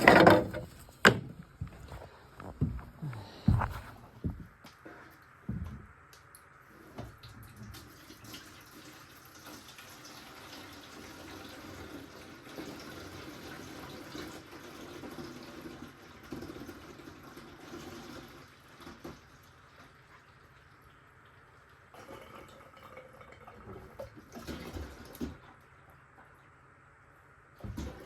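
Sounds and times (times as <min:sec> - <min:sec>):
fuel pouring into tank: 0:07.2 - 0:25.5.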